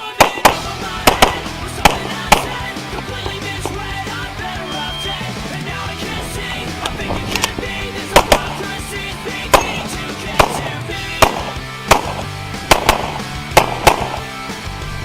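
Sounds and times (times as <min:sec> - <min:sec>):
background music: 0:00.0 - 0:15.0
handgun shots: 0:00.1 - 0:02.7, 0:07.3 - 0:08.6, 0:09.5 - 0:09.8, 0:10.4 - 0:14.3.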